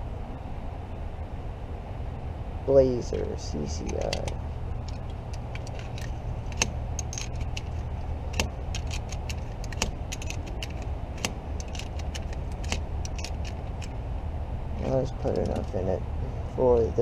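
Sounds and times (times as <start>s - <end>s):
low hum: 0.0s - 17.0s
loose rounds jingling: 3.1s - 14.0s.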